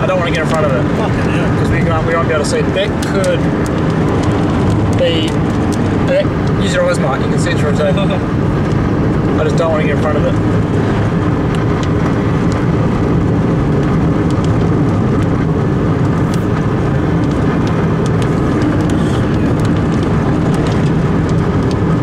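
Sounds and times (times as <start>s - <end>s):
car engine at speed: 0.0s - 22.0s
road noise inside car: 0.0s - 22.0s.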